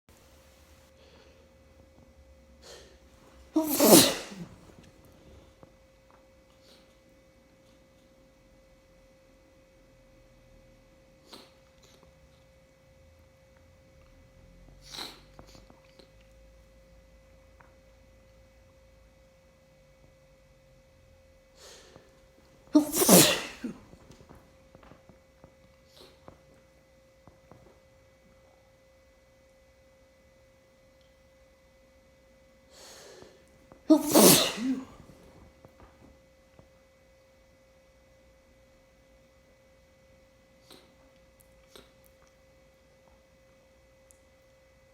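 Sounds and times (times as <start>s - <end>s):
person sneezing loudly: 3.5s - 4.7s, 22.7s - 24.0s, 33.9s - 35.1s.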